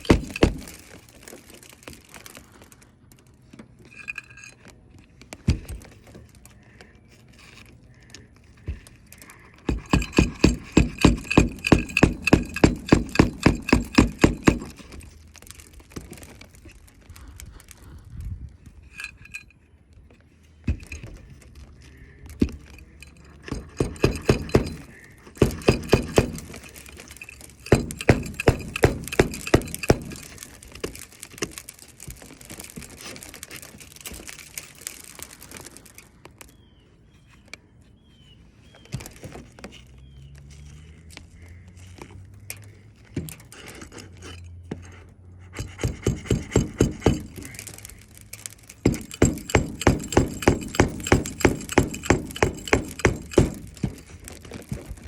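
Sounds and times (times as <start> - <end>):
hammer driving nails into shingle: 0.0 - 2.0, 9.6 - 15.2, 20.7 - 21.2, 22.4 - 34.3, 45.5 - 55.0.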